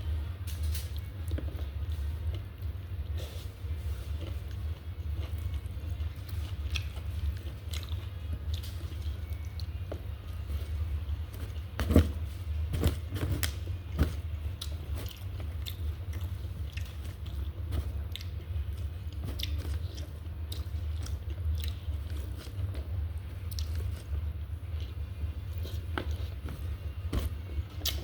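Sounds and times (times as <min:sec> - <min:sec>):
person chewing food: 0:01.0 - 0:28.0.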